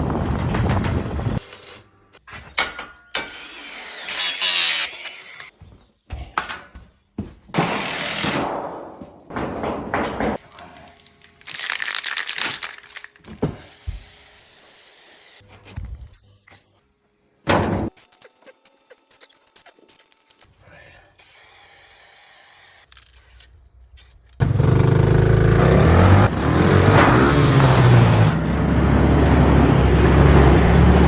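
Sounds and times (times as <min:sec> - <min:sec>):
power tools: 0:00.1 - 0:01.9, 0:03.1 - 0:05.5, 0:07.6 - 0:08.4, 0:13.2 - 0:15.5, 0:21.2 - 0:23.5
knocks and cracks: 0:08.2 - 0:13.6.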